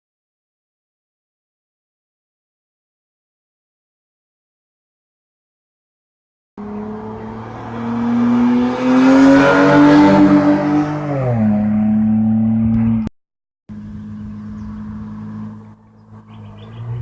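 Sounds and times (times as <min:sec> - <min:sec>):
car engine idling and revving: 0:06.6 - 0:13.1, 0:13.7 - 0:17.0.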